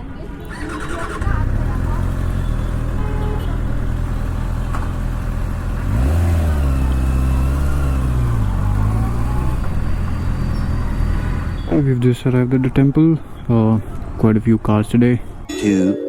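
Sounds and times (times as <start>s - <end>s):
motorcycle engine revving: 0.5s - 11.6s.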